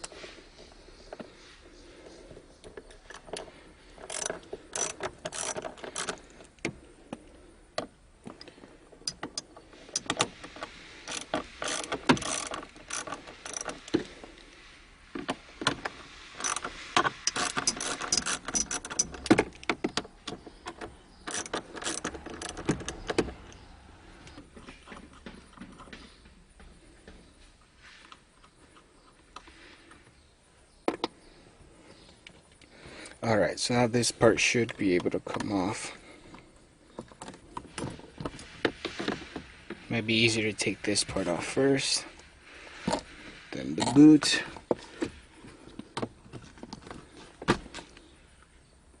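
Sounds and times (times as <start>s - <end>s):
ratchet wrench clicking: 4.0s - 6.3s, 11.0s - 14.0s, 16.3s - 19.3s, 21.2s - 23.2s.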